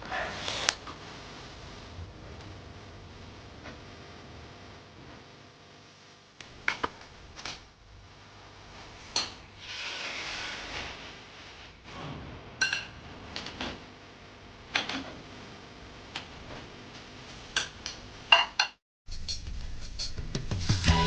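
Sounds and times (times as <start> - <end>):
short hissing noise: 9.6 - 11.6.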